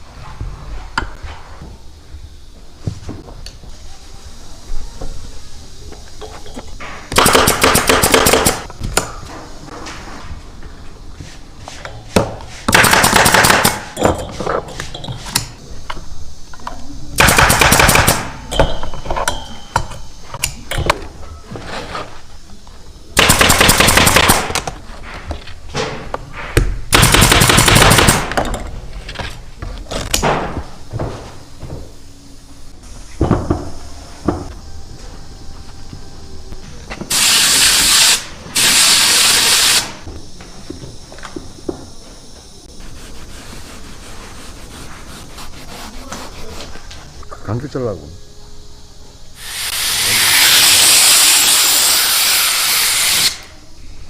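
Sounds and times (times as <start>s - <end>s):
quiet workshop noise: 0.0s - 54.0s
pneumatic staple gun firing: 7.1s - 9.1s, 12.7s - 13.9s, 17.2s - 18.3s, 23.2s - 24.7s, 26.9s - 28.4s, 37.1s - 40.0s, 49.4s - 53.5s.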